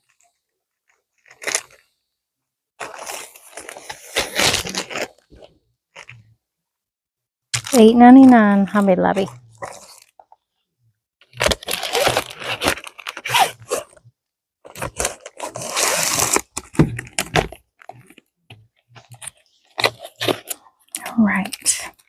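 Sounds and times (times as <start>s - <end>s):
plastic packaging crinkling and tearing: 1.2s - 1.8s, 2.8s - 5.3s, 11.2s - 14.0s, 14.7s - 18.2s.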